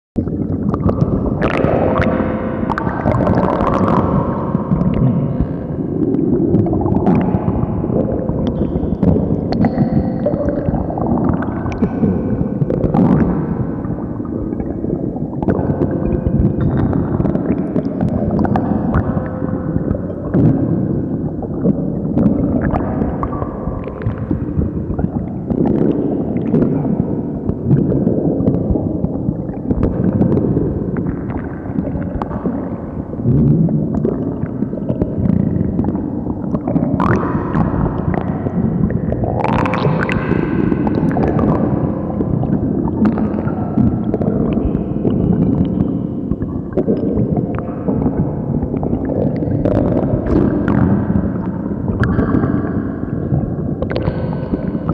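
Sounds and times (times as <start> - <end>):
stomach growling and gurgling: 0.2 - 54.9
small bubbling pops: 14.5 - 19.2, 21.4 - 32.6, 33.3 - 52.6.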